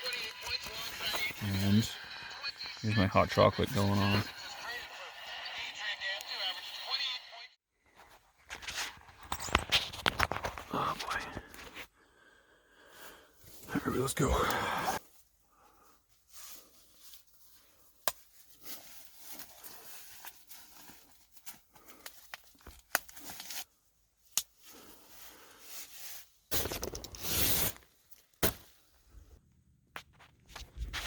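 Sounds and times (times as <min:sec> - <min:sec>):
rustling: 0:16.2 - 0:23.8.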